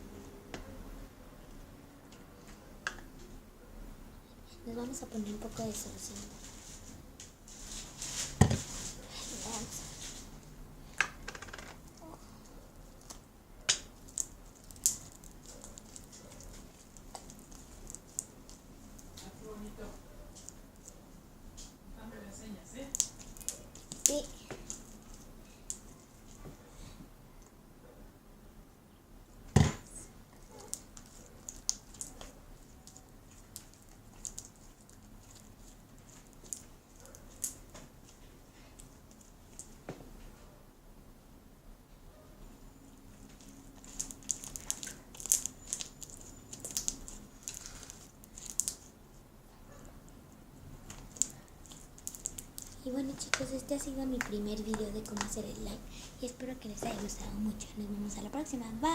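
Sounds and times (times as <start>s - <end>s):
slime kneaded by hand: 11.0s - 19.4s, 22.8s - 26.4s, 29.7s - 39.9s, 43.1s - 49.2s, 50.8s - 56.2s.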